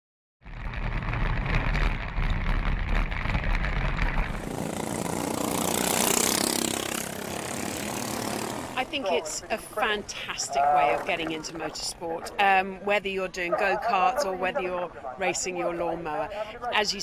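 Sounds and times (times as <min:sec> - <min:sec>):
mower rushing past: 0:04.2 - 0:11.5
lawn mower engines running hard: 0:04.3 - 0:09.9.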